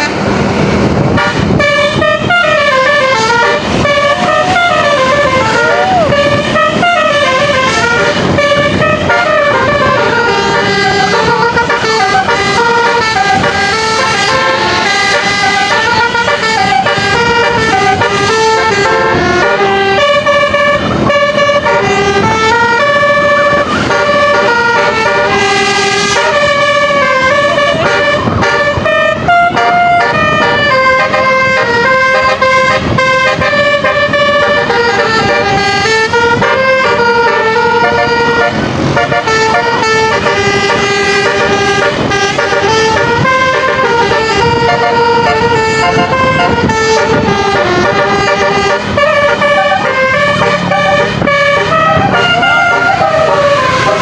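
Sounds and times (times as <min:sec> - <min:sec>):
bus horns playing a melody: 0:00.0 - 0:54.0.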